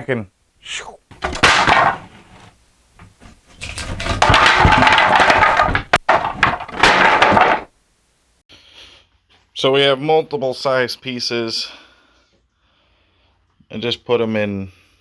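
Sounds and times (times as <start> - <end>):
boards scraping: 1.1 - 7.7
wooden boards knocking together: 1.1 - 7.7.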